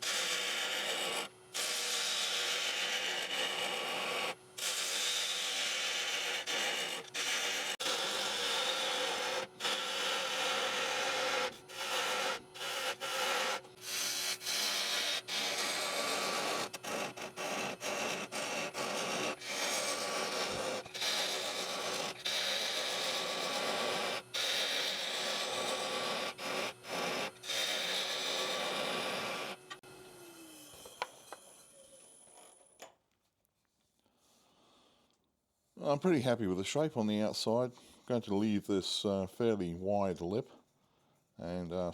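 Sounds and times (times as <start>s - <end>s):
gouge cutting wood on lathe: 0.0s - 29.8s
lathe motor hum: 0.3s - 31.1s.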